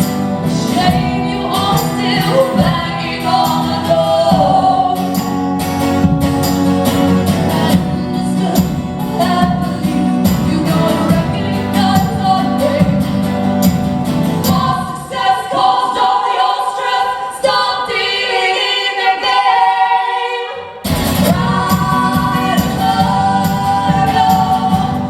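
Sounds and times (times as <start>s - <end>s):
guitar playing: 0.0s - 15.1s, 20.7s - 25.0s
vocal harmonies singing: 0.0s - 25.0s.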